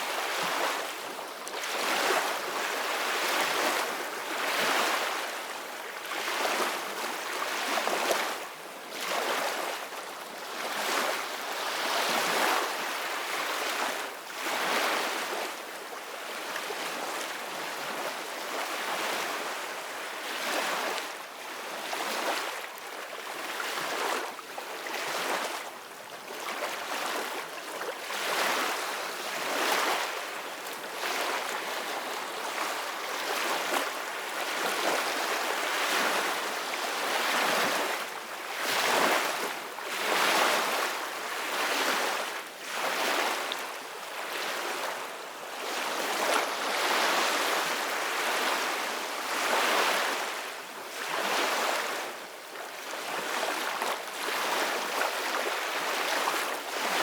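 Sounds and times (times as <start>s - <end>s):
sea waves splashing: 45.6s - 50.4s.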